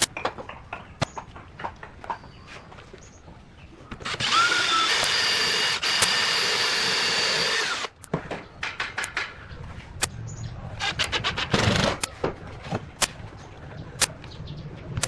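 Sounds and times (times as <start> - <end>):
electric power tool motor: 4.0 - 8.0.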